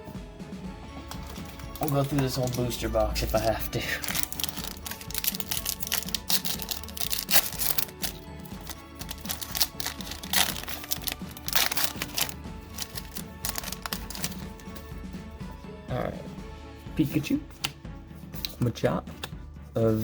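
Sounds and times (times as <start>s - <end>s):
background music: 0.0s - 20.0s
foil wrapper crinkling and tearing: 1.0s - 14.9s.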